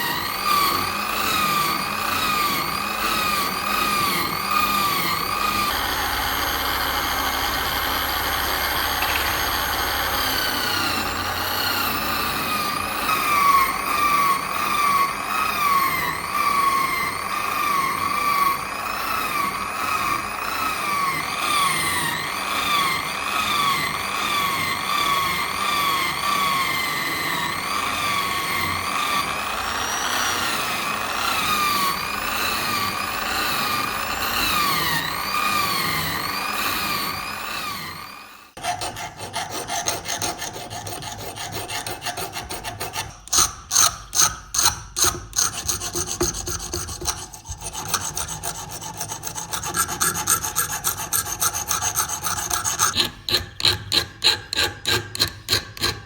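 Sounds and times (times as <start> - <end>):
power tool motor whining: 0.0 - 38.7
hand filing rasping strokes: 38.5 - 56.0.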